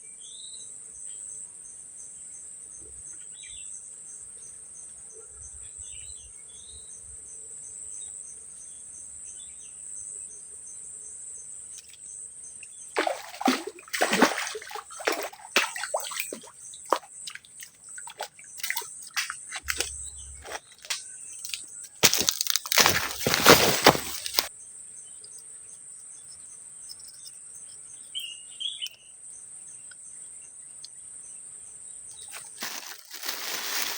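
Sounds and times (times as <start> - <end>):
insects trilling: 0.2 - 33.9
splashing in water: 13.0 - 24.5, 32.3 - 33.9.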